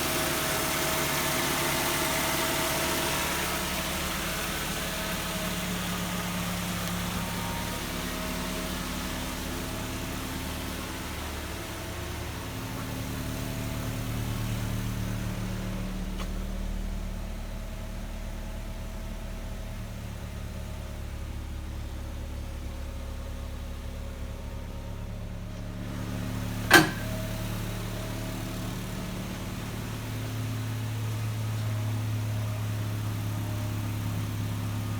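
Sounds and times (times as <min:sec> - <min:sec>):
car engine idling with lifter tick: 0:00.0 - 0:34.9
sharp click: 0:26.7 - 0:27.2.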